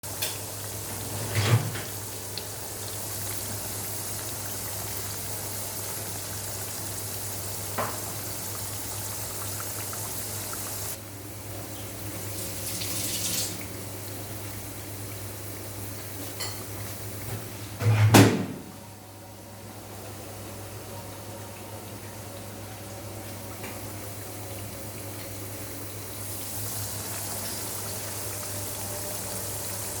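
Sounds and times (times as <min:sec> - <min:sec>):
water running from tap: 0:00.0 - 0:11.0, 0:11.9 - 0:17.3, 0:23.1 - 0:30.0
dishes clinking: 0:16.3 - 0:16.7.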